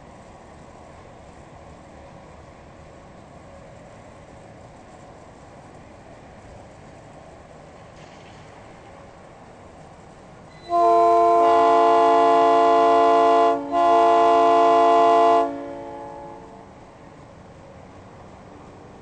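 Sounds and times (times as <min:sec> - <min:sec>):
train horn chord blasts: 0:10.5 - 0:16.7.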